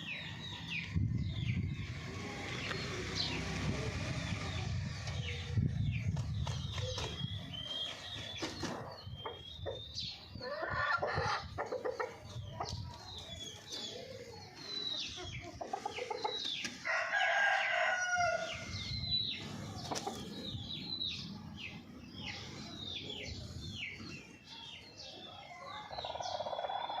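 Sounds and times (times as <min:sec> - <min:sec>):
chicks peeping: 0:04.3 - 0:27.0
chickens clucking: 0:04.5 - 0:17.0, 0:18.7 - 0:27.0
rooster crowing: 0:16.8 - 0:18.7.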